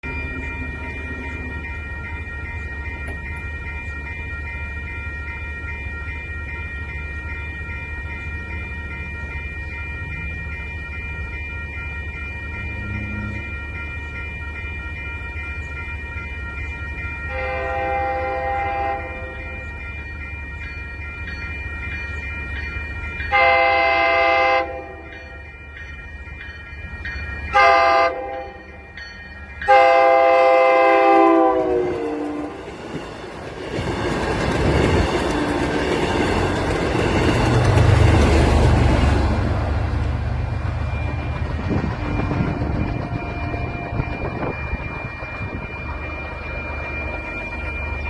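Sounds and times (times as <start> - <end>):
train horn blasts: 17.3 - 19.6, 23.3 - 25.2, 27.6 - 28.6, 29.7 - 32.6
train wheels rumbling on rail: 29.6 - 48.0.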